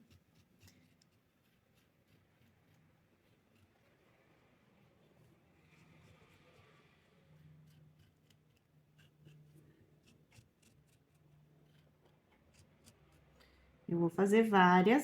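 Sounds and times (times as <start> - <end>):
scissors cutting felt: 0.0 - 6.6, 7.6 - 13.4.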